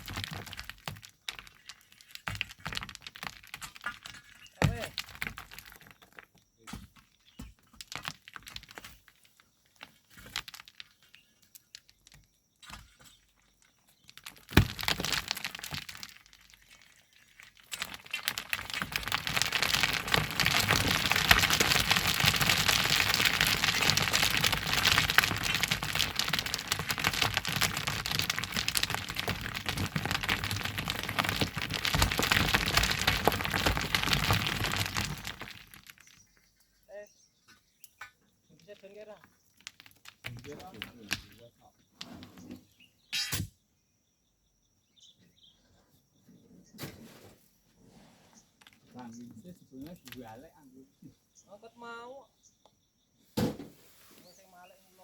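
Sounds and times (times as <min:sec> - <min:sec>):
sand and gravel pouring: 0:00.0 - 0:06.3, 0:07.5 - 0:12.1, 0:12.8 - 0:36.3, 0:38.6 - 0:42.8, 0:48.0 - 0:50.6, 0:53.7 - 0:55.0.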